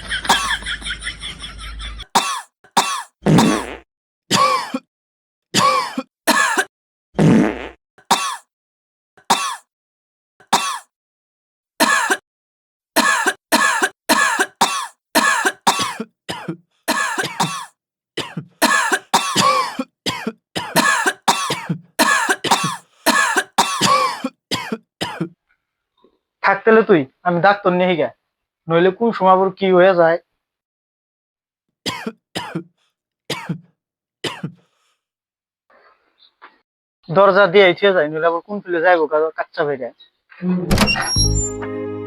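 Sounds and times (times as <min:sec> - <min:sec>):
croaking frog-like coughs: 0:00.3 - 0:00.6, 0:02.2 - 0:03.7, 0:04.3 - 0:04.9, 0:05.6 - 0:06.7, 0:08.1 - 0:08.4, 0:09.2 - 0:09.6, 0:10.5 - 0:10.9, 0:11.8 - 0:12.2, 0:13.0 - 0:25.4, 0:31.9 - 0:32.7, 0:33.3 - 0:34.6.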